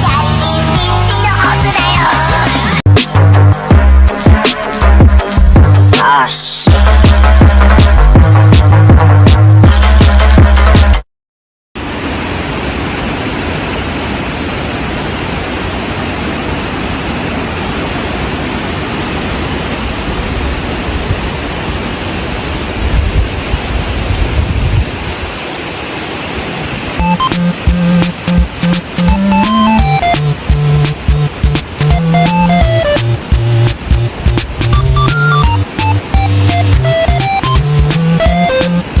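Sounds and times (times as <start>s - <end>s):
electronic music: 0.0s - 11.0s, 27.0s - 39.0s
steady static noise: 25.0s - 39.0s.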